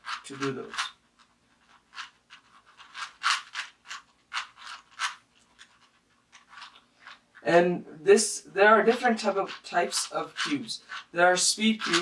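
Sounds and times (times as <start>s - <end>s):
puzzle cube turning clicks: 0.0s - 7.3s, 8.9s - 12.0s.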